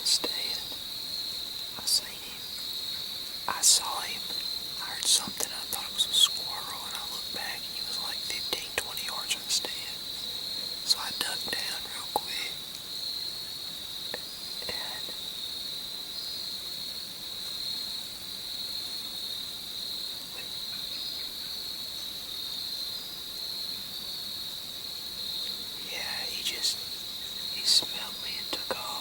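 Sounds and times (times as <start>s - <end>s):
insects singing: 0.0s - 29.0s
faint ticks: 25.4s - 26.8s.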